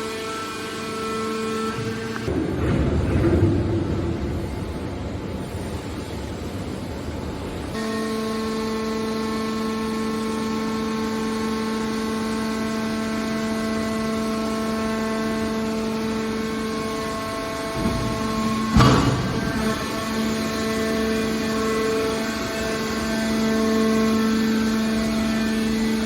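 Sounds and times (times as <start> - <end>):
steady pitched hum: 0.0 - 26.0
scrap baler running: 15.4 - 26.0.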